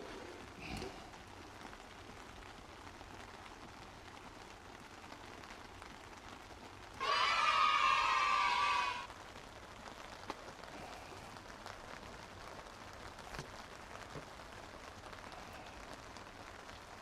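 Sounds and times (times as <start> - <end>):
light rain falling: 0.0 - 17.0.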